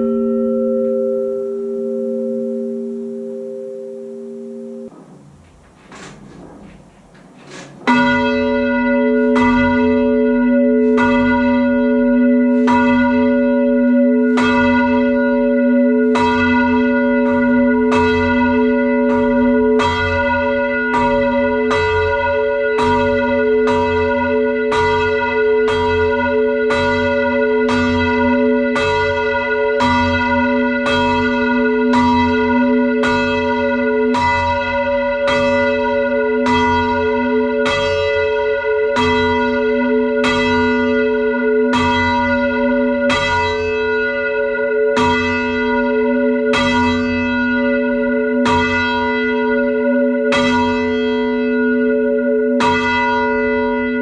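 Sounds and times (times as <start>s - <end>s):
church bells ringing: 0.0s - 4.9s, 7.8s - 54.0s
steady low hum: 0.0s - 9.4s.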